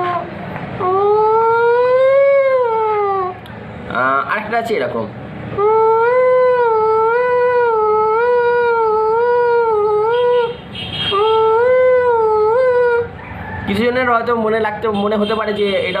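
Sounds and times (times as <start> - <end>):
man imitating a siren: 0.0 - 3.4, 5.6 - 13.8.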